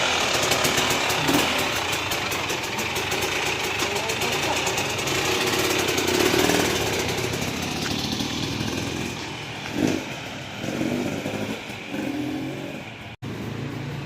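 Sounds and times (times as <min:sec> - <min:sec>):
two-stroke engine idling: 0:00.0 - 0:14.0.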